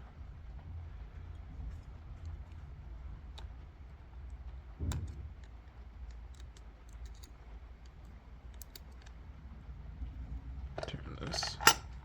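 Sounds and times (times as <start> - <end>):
lock picks clicking in lock: 4.9 - 9.2.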